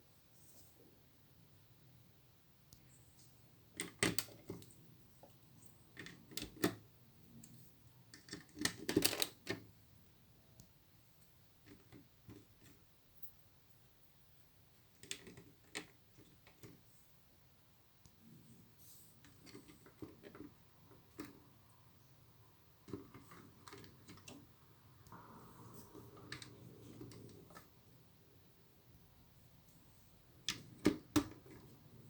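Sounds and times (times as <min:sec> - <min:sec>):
plastic toy bricks clicking: 0:08.1 - 0:09.6.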